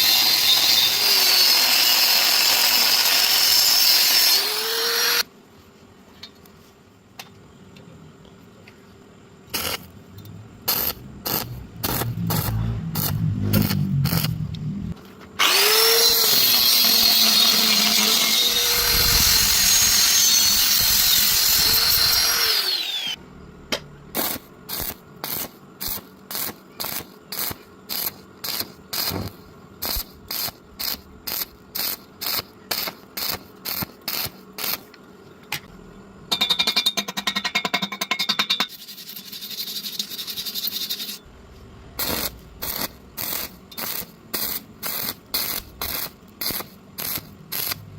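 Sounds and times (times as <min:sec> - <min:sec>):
power tool running at high speed: 0:15.4 - 0:23.2.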